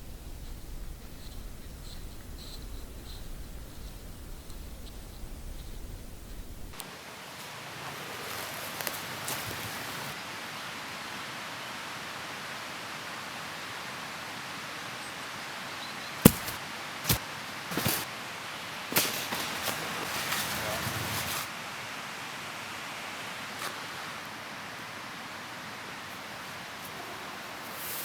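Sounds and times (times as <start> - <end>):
steady outdoor hiss: 0.0 - 28.0.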